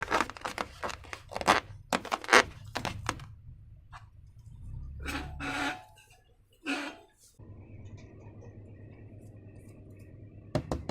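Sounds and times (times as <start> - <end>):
crinkly plastic crackling: 0.0 - 3.3
plastic rubbing: 0.0 - 3.3.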